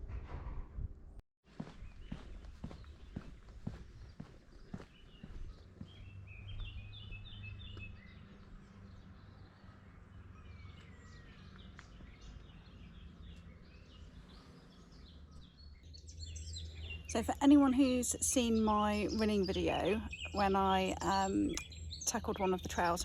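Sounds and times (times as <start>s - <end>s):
footsteps on trail: 1.5s - 8.7s, 10.8s - 13.4s
songbird singing: 1.6s - 23.0s.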